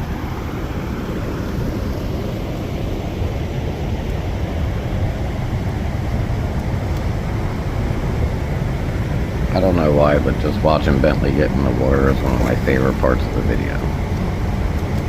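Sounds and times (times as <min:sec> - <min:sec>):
waterfall rushing: 0:07.2 - 0:15.0.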